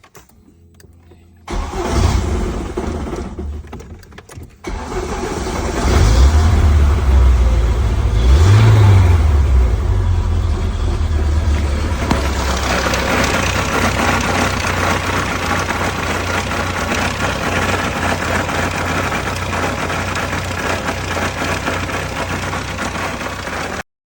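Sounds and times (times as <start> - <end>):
car engine idling: 0.6 - 23.8
rapid knock from gearbox: 11.4 - 23.8.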